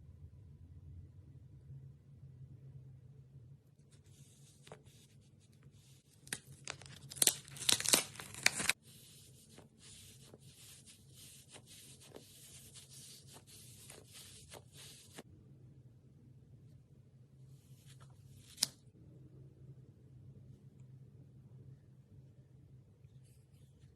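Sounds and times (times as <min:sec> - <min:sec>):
slime crackling: 0:06.2 - 0:08.8.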